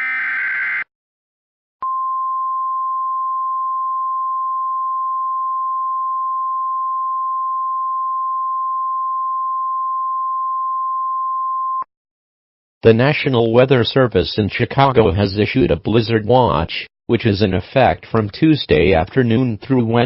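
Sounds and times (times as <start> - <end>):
steady alarm tone: 0.0 - 0.9.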